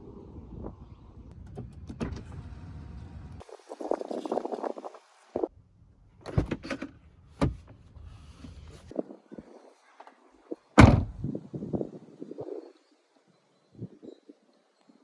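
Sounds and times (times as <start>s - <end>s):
car door thump: 10.8s - 11.3s.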